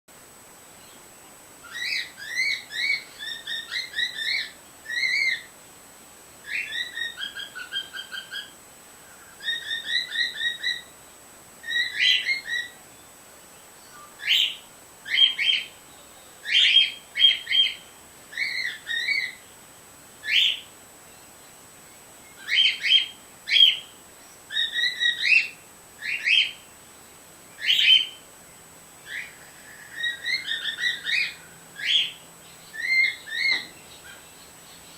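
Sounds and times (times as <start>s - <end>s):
cockatiel chirping and whistling: 6.5s - 8.5s, 9.4s - 10.9s, 11.6s - 12.8s, 24.5s - 26.5s, 29.9s - 32.2s.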